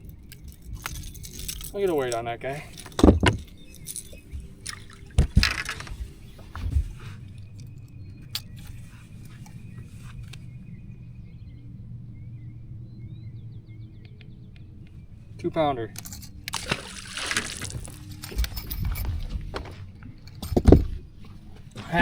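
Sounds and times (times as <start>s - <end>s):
knocks and rattles handling fish: 0.0s - 10.3s, 16.0s - 22.0s.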